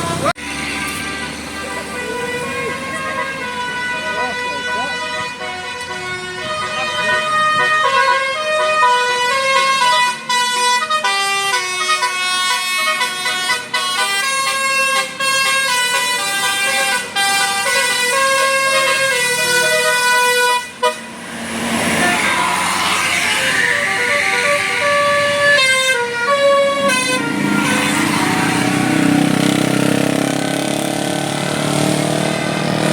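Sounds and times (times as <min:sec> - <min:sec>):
musical bus horn melody: 0:00.0 - 0:30.2
burst of rushing noise: 0:21.1 - 0:23.9.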